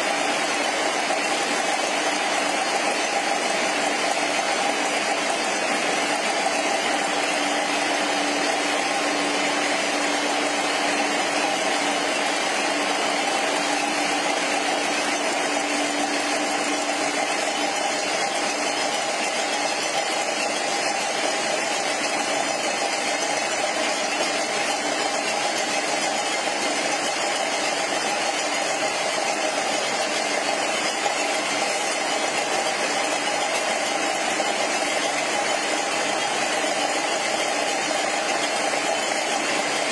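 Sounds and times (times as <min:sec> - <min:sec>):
low machine hum: 0:00.0 - 0:27.1
machine whining: 0:00.0 - 0:39.9.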